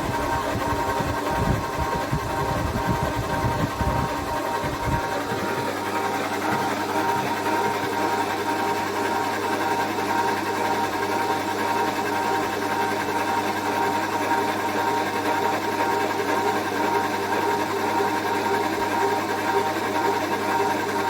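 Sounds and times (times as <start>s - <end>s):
milling machine whirring: 0.0s - 13.6s.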